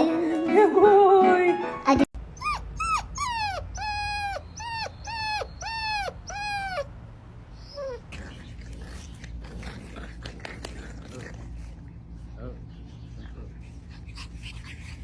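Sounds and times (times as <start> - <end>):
dog whining: 2.3 - 11.5.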